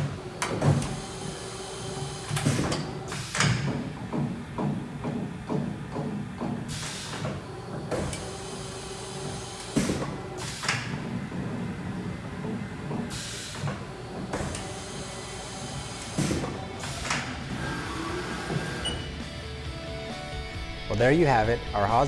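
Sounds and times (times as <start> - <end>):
machine whine: 14.2 - 22.0.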